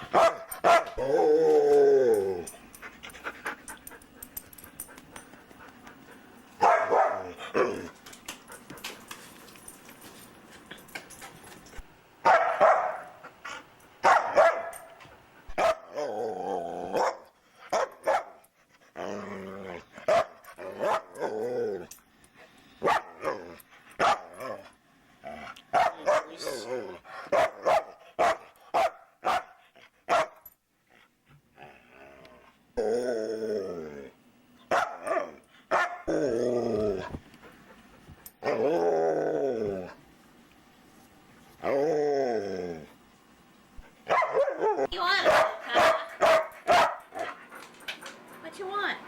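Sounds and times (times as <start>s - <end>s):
dog barking and howling: 0.1s - 2.5s, 6.6s - 7.9s, 12.2s - 13.2s, 14.0s - 14.9s, 15.6s - 16.2s, 16.8s - 18.4s, 20.1s - 21.9s, 25.8s - 29.5s, 34.7s - 37.1s, 38.4s - 40.0s, 44.1s - 47.3s.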